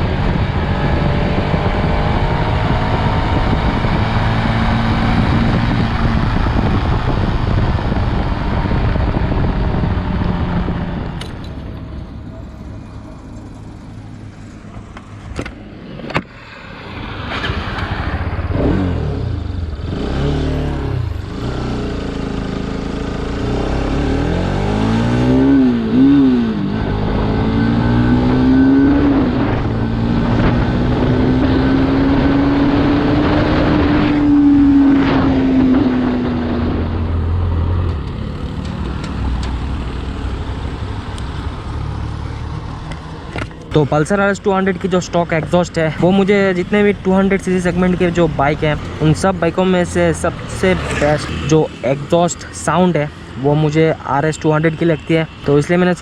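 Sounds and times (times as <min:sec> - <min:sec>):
wind blast on microphone: 0:00.0 - 0:11.2
motorcycle engine revving: 0:00.0 - 0:44.0, 0:44.6 - 0:56.0.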